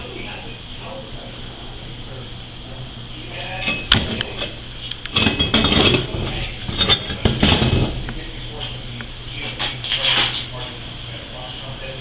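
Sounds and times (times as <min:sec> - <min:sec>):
metal pieces clinking together: 0:03.6 - 0:08.5.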